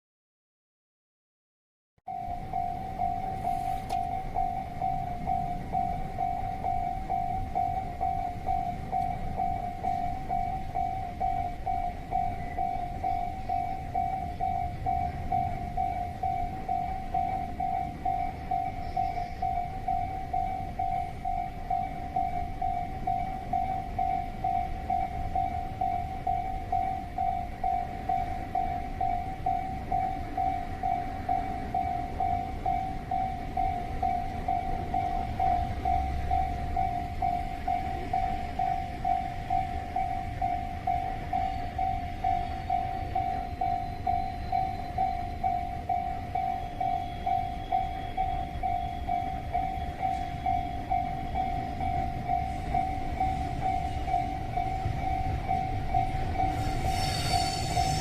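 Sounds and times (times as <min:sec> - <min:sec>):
level crossing alarm bell ringing: 0:02.1 - 0:58.0
freight train rumbling: 0:02.3 - 0:58.0.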